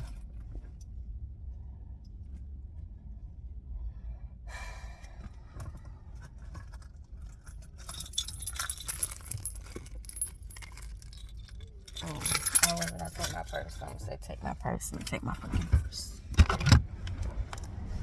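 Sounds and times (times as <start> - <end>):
low steady rumble: 0.0 - 18.0
small items clinking and rustling: 6.4 - 16.2
keys jangling: 6.8 - 14.3.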